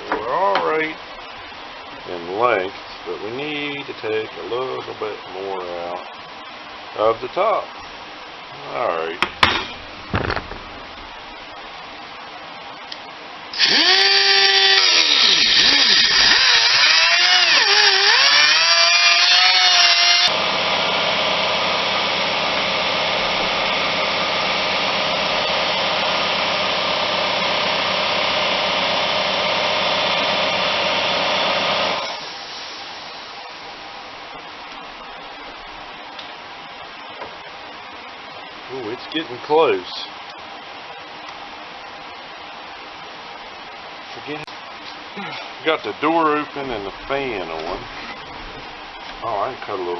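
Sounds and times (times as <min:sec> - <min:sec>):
cutoff wheel cutting fiberglass: 0:13.5 - 0:32.3.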